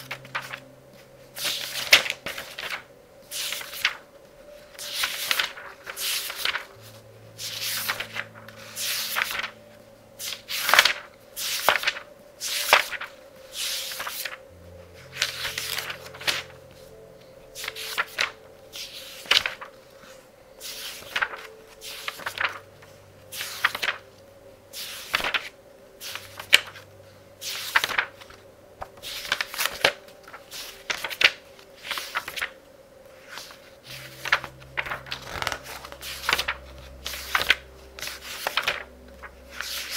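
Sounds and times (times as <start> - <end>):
book pages turning: 0.0 - 39.9
soft music: 0.0 - 39.9.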